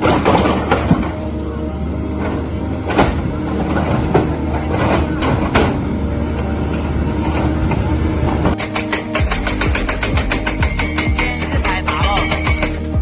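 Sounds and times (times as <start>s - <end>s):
diesel engine drone: 0.0s - 13.0s
sharp metal clanks and knocks: 8.6s - 13.0s.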